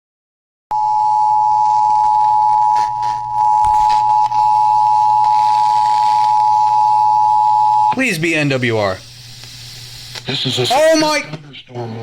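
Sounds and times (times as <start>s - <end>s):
two-tone attention signal: 0.7s - 8.0s.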